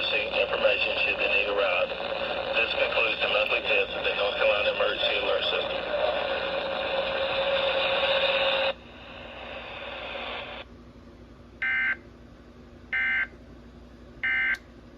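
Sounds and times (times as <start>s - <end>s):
radio hiss: 0.0s - 10.6s.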